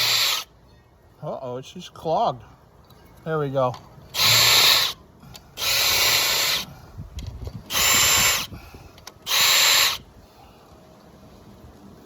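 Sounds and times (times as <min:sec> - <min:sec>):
power drill drilling into wood: 0:00.0 - 0:00.5, 0:04.2 - 0:05.0, 0:05.6 - 0:06.7, 0:07.7 - 0:08.5, 0:09.3 - 0:10.0.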